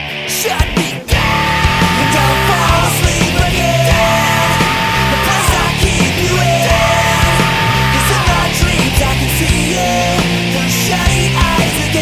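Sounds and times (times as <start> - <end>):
rock band playing: 0.0 - 12.0.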